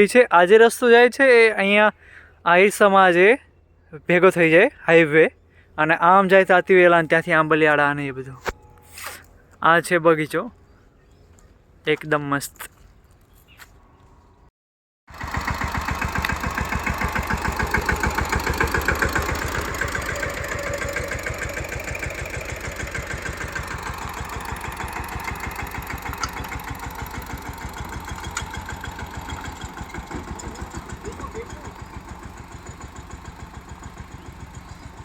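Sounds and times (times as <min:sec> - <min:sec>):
tractor diesel engine running: 0:15.1 - 0:35.0.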